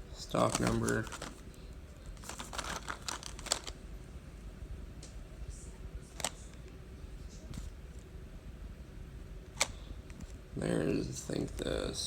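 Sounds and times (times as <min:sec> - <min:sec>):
packaging clicks and crinkles: 0:00.3 - 0:03.8.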